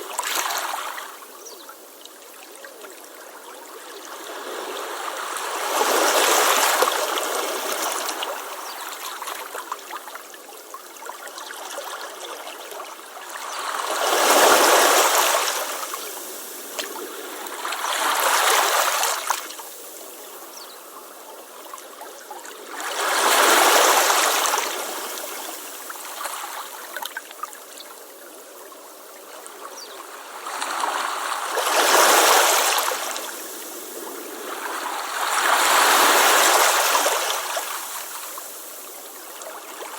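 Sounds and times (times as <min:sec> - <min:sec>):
waves breaking on a beach: 0:00.0 - 0:01.6, 0:02.2 - 0:39.9.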